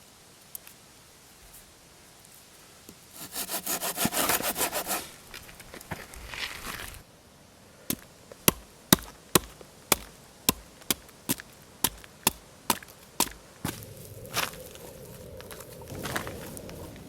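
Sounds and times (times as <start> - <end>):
axe chopping wood: 7.9 - 13.4.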